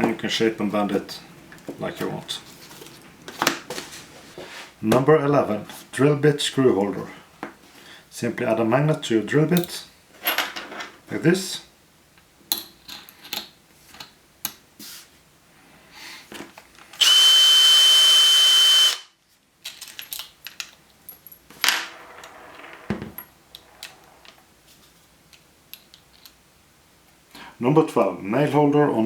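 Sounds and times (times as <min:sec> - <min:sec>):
power drill whine: 0:17.0 - 0:19.1.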